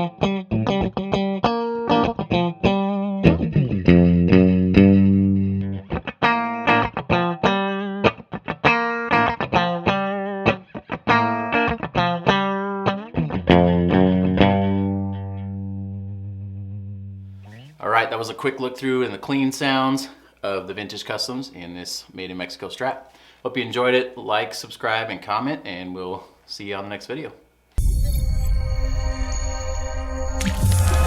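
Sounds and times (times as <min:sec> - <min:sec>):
clean electric guitar blues: 0:00.0 - 0:18.4
electric guitar chord ringing: 0:08.6 - 0:17.7, 0:27.8 - 0:31.0.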